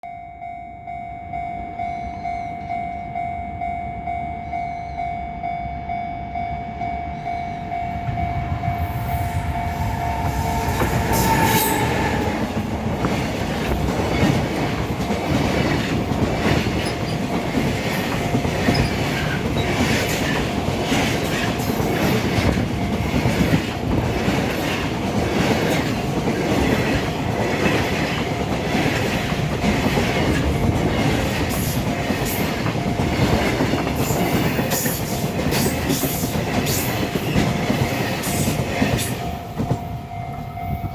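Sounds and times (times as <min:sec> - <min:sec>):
level crossing alarm ringing: 0:00.0 - 0:24.5, 0:28.1 - 0:35.5, 0:37.6 - 0:40.9
train wheels clattering over rails: 0:08.7 - 0:40.0.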